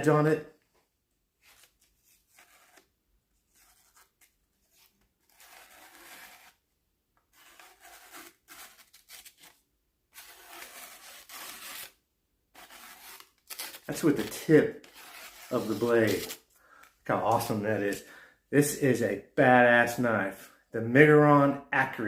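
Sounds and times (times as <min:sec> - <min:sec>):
knife slicing paper: 0:01.4 - 0:02.9, 0:03.5 - 0:06.6, 0:07.3 - 0:16.4.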